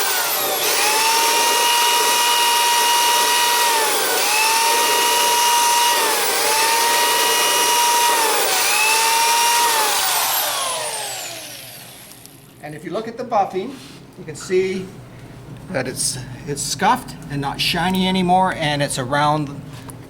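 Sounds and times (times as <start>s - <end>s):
cordless drill whining: 0.0s - 12.6s
buffer scuffing rubber: 13.6s - 14.1s.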